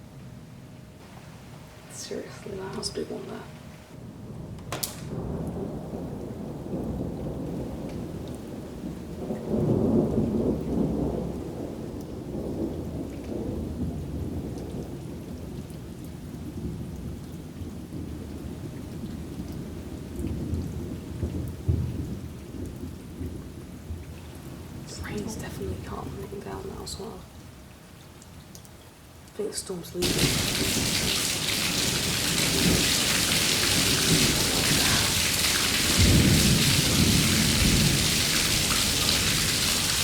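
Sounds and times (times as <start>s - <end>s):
thunder rumbling: 1.0s - 18.7s, 19.3s - 27.4s, 29.6s - 40.0s
heavy rain: 1.0s - 40.0s.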